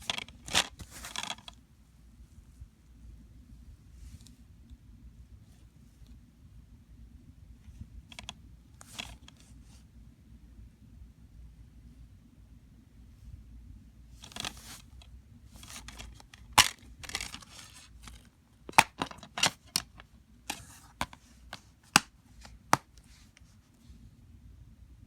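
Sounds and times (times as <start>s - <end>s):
handling rustling: 0.0s - 1.5s, 14.2s - 23.7s.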